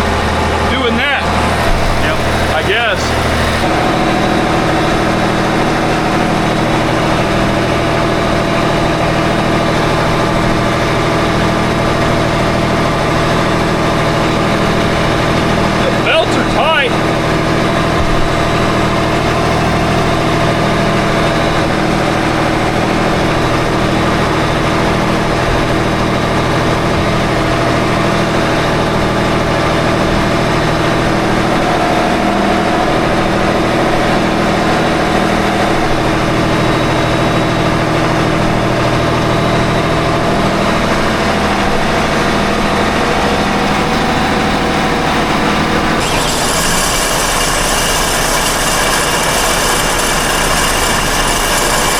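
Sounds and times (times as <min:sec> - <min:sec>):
diesel engines humming with pulsing beat: 0:00.0 - 0:21.2, 0:38.0 - 0:47.3.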